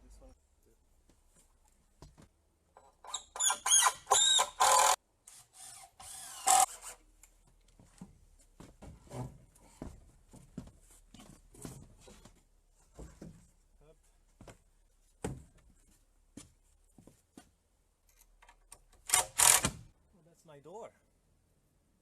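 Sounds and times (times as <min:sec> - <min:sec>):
power drill running: 0:03.8 - 0:07.0, 0:19.1 - 0:19.7.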